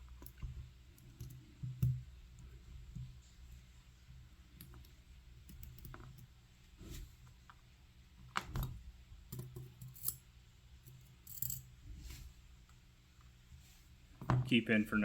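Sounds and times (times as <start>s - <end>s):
metal lock parts clicking: 9.3s - 10.2s, 11.2s - 11.6s.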